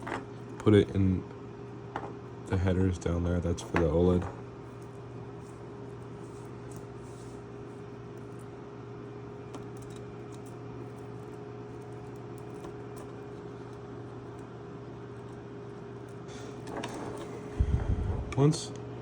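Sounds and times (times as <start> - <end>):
steady electrical hum: 0.0 - 19.0.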